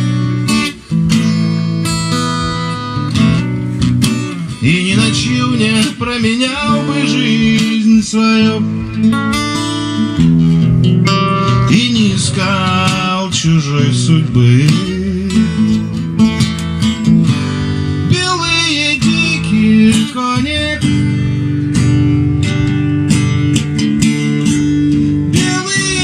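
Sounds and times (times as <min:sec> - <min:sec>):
acoustic guitar playing: 0:00.0 - 0:26.0
person singing: 0:04.4 - 0:09.2, 0:11.5 - 0:16.0, 0:25.3 - 0:26.0.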